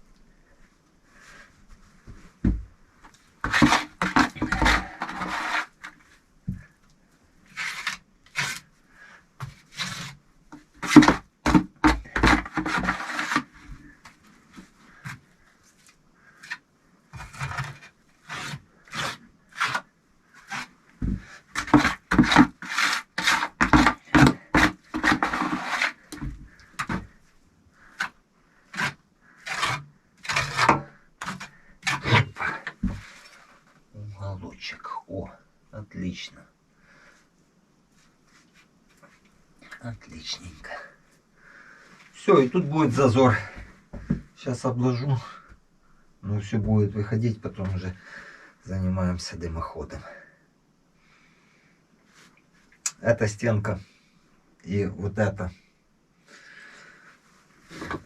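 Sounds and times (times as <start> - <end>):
scraping and rubbing of mortar: 3.4 - 6.6, 7.4 - 8.8, 9.4 - 15.5, 16.3 - 27.2, 27.8 - 33.7, 57.6 - 58.0.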